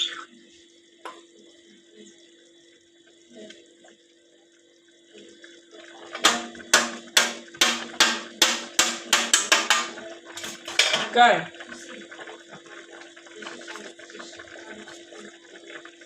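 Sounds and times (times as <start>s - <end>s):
quiet kitchen sounds: 0.0s - 16.0s
utensil knocking against pot: 6.2s - 10.0s.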